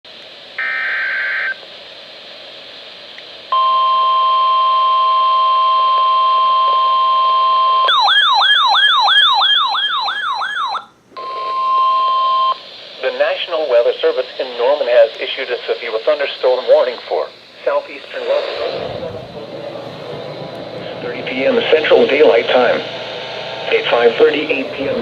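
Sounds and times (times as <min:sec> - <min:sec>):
siren-like warble: 0:04.9 - 0:10.9.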